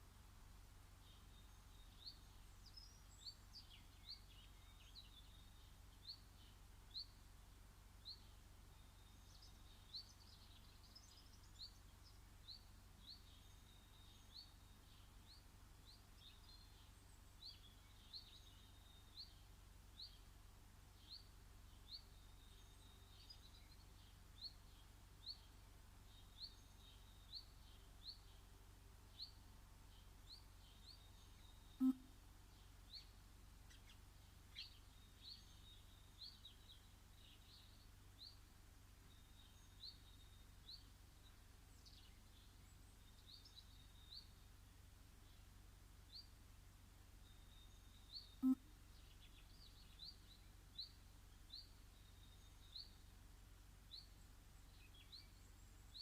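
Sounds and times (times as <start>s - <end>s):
faint bird twittering: 29.1s - 38.4s, 47.1s - 53.1s
bird high chirp: 30.7s - 32.2s, 47.2s - 53.0s.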